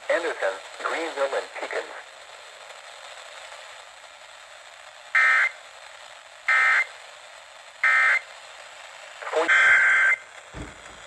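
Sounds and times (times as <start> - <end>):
radio hiss: 0.1 - 2.1, 9.2 - 9.8.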